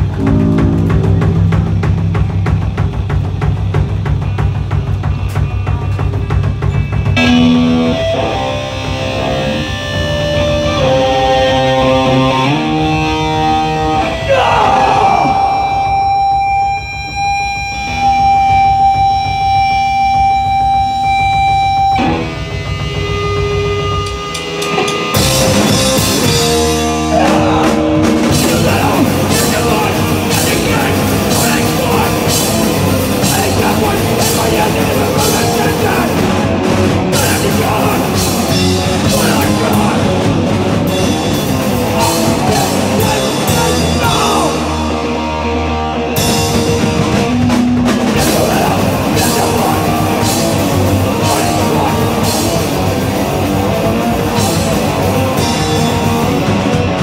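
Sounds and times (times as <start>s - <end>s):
guitar ringing note: 0.0s - 4.6s
fast drums: 0.0s - 11.0s, 22.0s - 45.3s, 46.1s - 57.0s
punk band playing loud: 0.0s - 57.0s.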